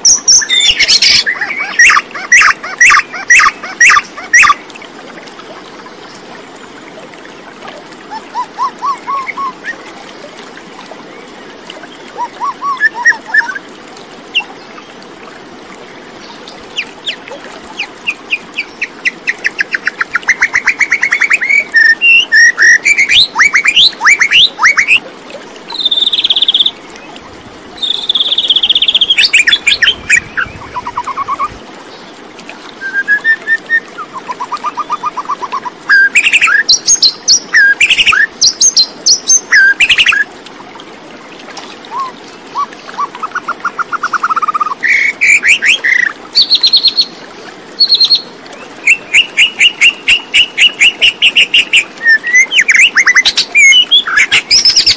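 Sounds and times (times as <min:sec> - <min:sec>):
bird song with trills: 0:47.8 - 0:48.2, 0:48.8 - 0:54.9.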